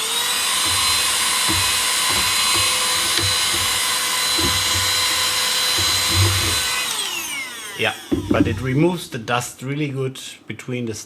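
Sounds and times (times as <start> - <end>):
mini vacuum cleaner whining: 0.0 - 9.5
faint low knocks on bricks: 0.6 - 6.9, 8.1 - 9.5.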